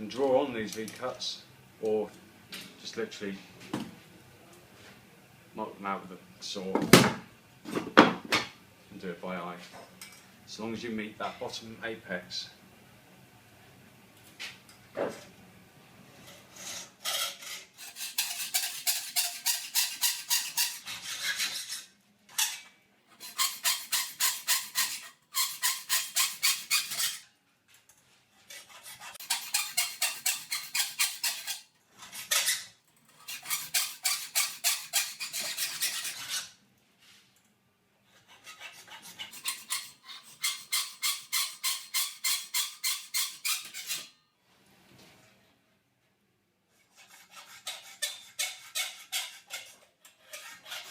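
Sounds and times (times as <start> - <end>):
hacksaw cutting steel: 17.8 - 21.8, 23.1 - 27.3, 29.1 - 31.7, 32.5 - 36.4, 39.2 - 44.1.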